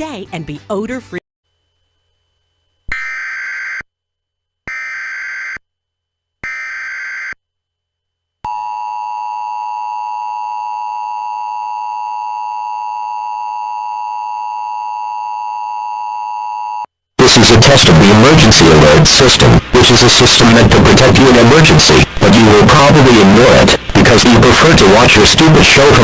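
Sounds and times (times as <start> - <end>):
screeching digital header bursts: 6.4 - 7.4
long steady alert tone: 8.5 - 16.9.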